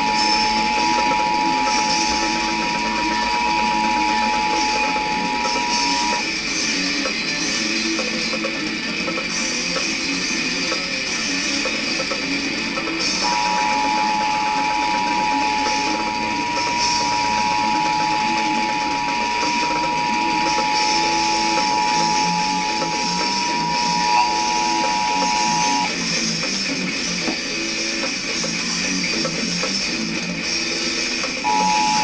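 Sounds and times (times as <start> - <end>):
two steady alert tones: 0.0 - 6.3, 13.2 - 25.9, 31.4 - 32.0
guitar music: 0.0 - 32.0.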